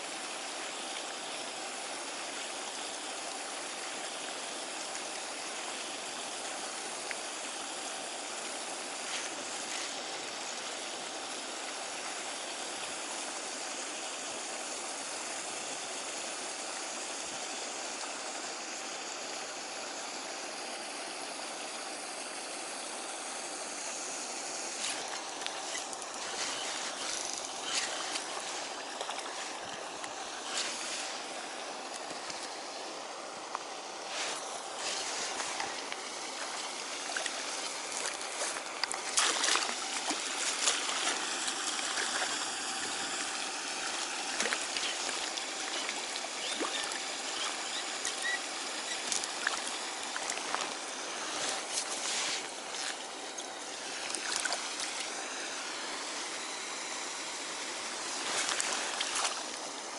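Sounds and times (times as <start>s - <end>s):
running water rushing: 0.0s - 59.9s.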